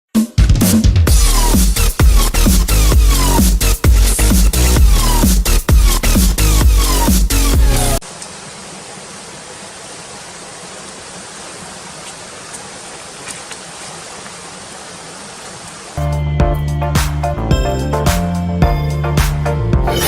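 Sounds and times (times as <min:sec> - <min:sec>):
electronic dance music: 0:00.2 - 0:08.0, 0:16.0 - 0:20.0
running water: 0:01.2 - 0:16.2.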